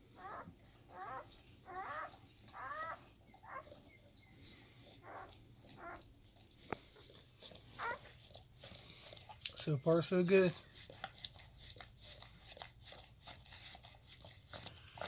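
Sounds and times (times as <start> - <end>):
puppies squealing: 0.2 - 4.2, 4.9 - 6.0, 7.7 - 8.1.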